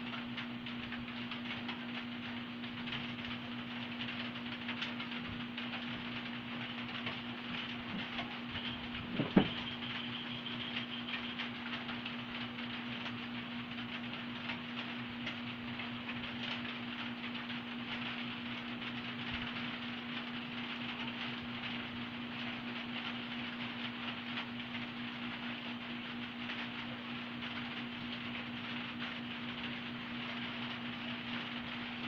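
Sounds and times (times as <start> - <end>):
low hum: 0.0 - 11.7.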